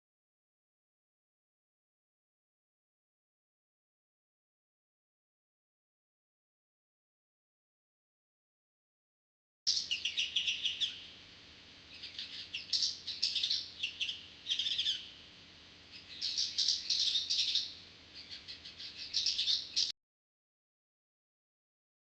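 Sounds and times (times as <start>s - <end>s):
sparrows chirping: 9.7s - 11.2s, 11.8s - 15.2s, 15.8s - 19.9s.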